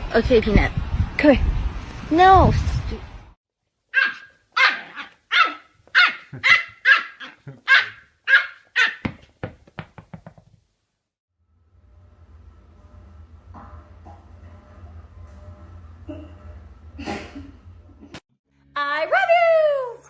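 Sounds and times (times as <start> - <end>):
dog barking: 3.9 - 9.2.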